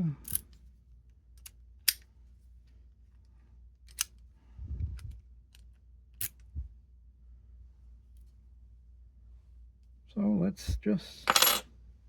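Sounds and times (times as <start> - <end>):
padlock and keys clicking: 3.9 - 4.1.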